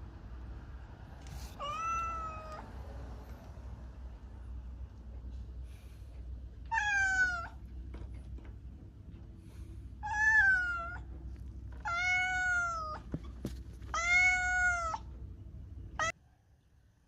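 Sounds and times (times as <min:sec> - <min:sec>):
low steady hum: 0:00.0 - 0:17.0
cat meowing: 0:01.5 - 0:02.7, 0:06.6 - 0:07.6, 0:10.0 - 0:11.1, 0:11.8 - 0:15.1, 0:16.0 - 0:16.2.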